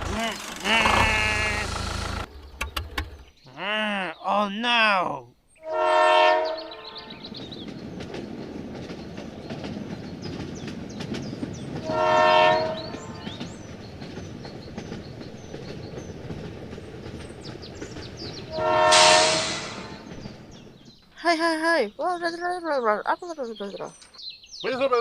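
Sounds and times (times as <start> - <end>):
vehicle rumbling clatter: 0.0 - 3.4, 7.2 - 21.5
horn blasts: 5.6 - 7.2, 11.8 - 13.4, 18.5 - 20.1
burst of hiss: 18.9 - 20.0.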